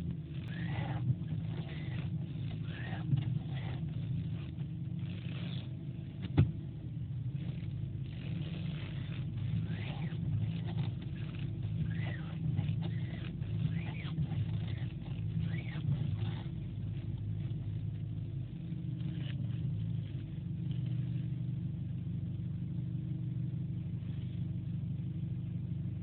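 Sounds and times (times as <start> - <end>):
car engine idling: 0.0 - 26.0
steering squeals: 0.4 - 3.9, 8.2 - 16.6.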